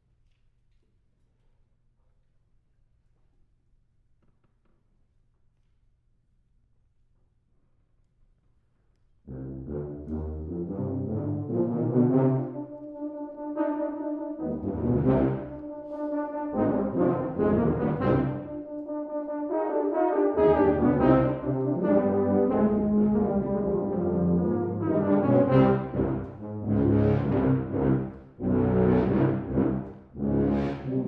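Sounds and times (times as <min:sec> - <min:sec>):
tuba and euphonium quartet playing: 0:09.3 - 0:31.0.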